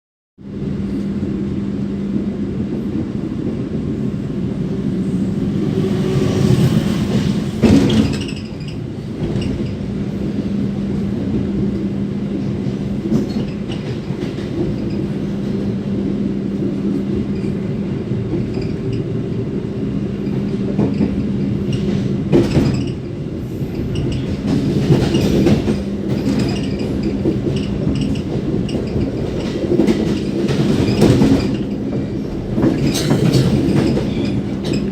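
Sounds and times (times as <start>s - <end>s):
train wheels rumbling: 0.5s - 34.9s
rattling and clacking: 23.7s - 34.9s.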